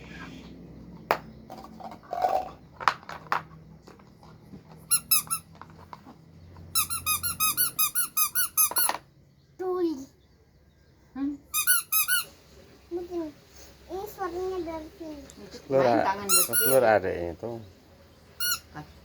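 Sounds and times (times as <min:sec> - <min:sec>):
plastic clicks and knocks: 0:01.1 - 0:04.8
rubber squeeze toy squeaking: 0:04.8 - 0:05.6, 0:06.7 - 0:09.0, 0:11.5 - 0:12.3, 0:16.3 - 0:16.8, 0:18.4 - 0:18.6.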